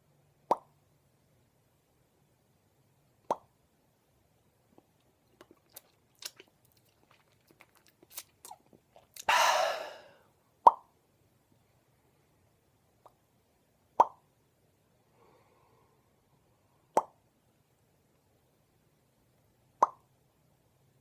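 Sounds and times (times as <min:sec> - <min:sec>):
hollow mouth pops: 0:00.5 - 0:00.7, 0:04.8 - 0:09.3, 0:10.6 - 0:10.9, 0:14.0 - 0:14.2, 0:16.9 - 0:17.2, 0:19.8 - 0:20.0
wet mouth clicks: 0:04.8 - 0:09.4.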